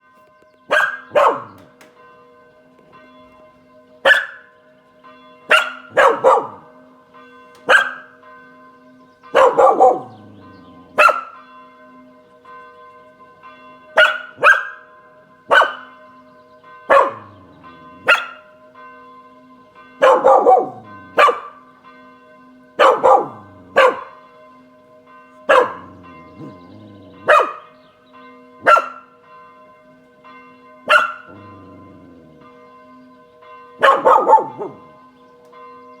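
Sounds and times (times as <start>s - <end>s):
church bells ringing: 0.0s - 36.0s
dog barking: 0.7s - 1.7s, 4.0s - 4.5s, 5.5s - 6.7s, 7.6s - 8.2s, 9.3s - 11.4s, 14.0s - 14.9s, 15.5s - 15.9s, 16.9s - 18.5s, 20.0s - 21.6s, 22.8s - 24.2s, 25.5s - 27.7s, 28.6s - 29.1s, 30.9s - 31.8s, 33.8s - 34.9s.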